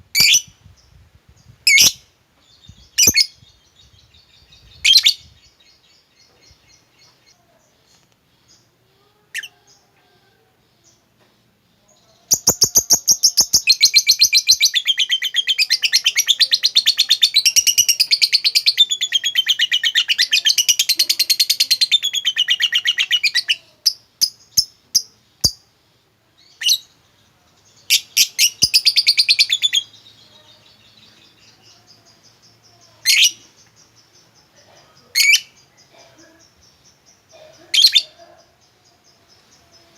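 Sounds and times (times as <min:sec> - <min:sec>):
bird chirps: 0:11.8 - 0:25.7, 0:26.4 - 0:39.9
bird chattering trill: 0:12.3 - 0:25.6.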